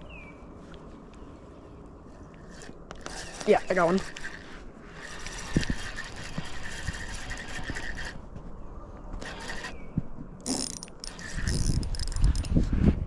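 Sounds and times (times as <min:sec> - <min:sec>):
fishing reel whirring clicking: 0:09.2 - 0:09.7, 0:10.5 - 0:12.5.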